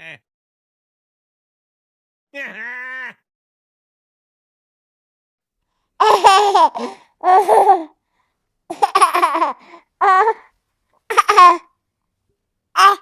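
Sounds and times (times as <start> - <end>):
baby giggling: 6.0 - 7.9, 8.7 - 10.4, 11.1 - 11.7, 12.8 - 13.0.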